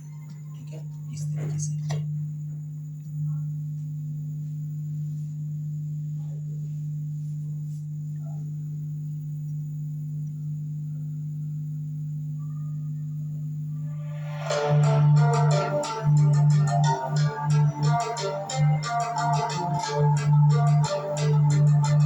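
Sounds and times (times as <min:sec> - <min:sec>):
speaker steady low tone: 0:00.0 - 0:22.0.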